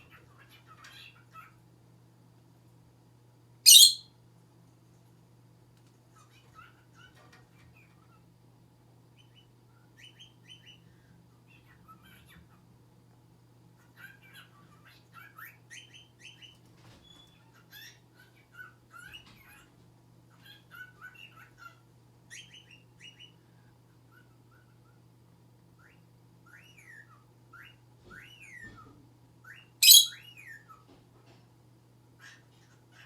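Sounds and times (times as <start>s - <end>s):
lovebird chirping and chattering: 3.7s - 4.0s, 29.8s - 30.3s
bird shrill squawk: 3.7s - 4.1s, 29.8s - 30.2s.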